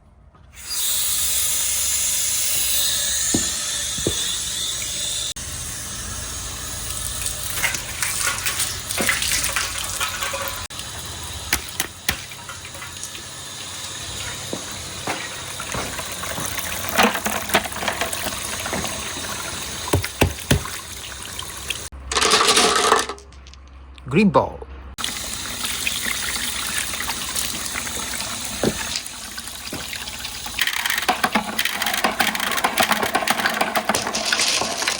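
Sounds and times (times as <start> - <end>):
water running and gushing: 5.8 - 21.9, 25.0 - 34.9.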